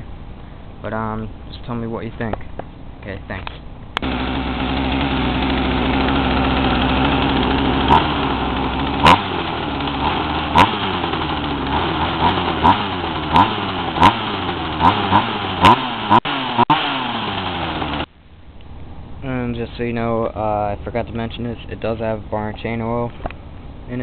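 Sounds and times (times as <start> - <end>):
chainsaw engine idling and revving: 4.0 - 18.1.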